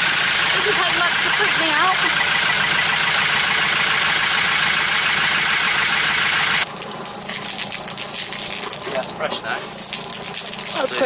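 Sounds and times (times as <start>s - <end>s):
boat engine idling: 0.0s - 11.0s
water flushing through hose: 4.6s - 11.0s.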